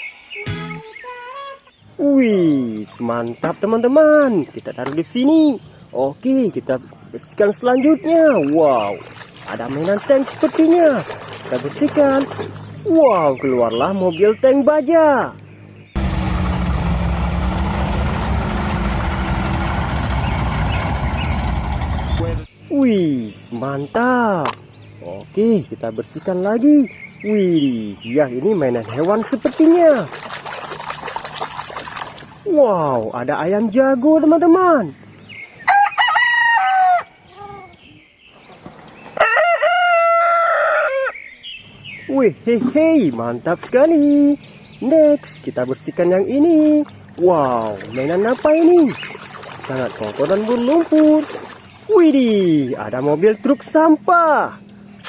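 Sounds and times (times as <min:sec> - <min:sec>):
heavy tank engine rumbling: 0:16.0 - 0:22.5
rooster crowing: 0:35.7 - 0:37.2, 0:39.2 - 0:41.2.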